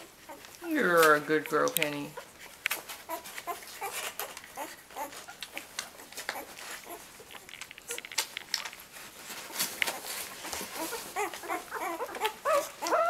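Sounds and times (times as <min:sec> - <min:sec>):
puppy squeaks and whimpers: 0:02.1 - 0:08.2, 0:09.9 - 0:13.0.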